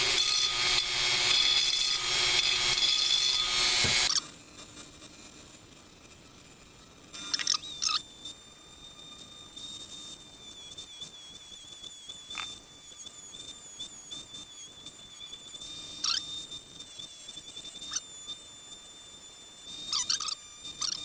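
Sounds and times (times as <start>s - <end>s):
rotary tool whining: 0.0s - 4.4s, 7.2s - 21.0s
scraping squeals: 12.3s - 18.3s, 19.7s - 21.0s.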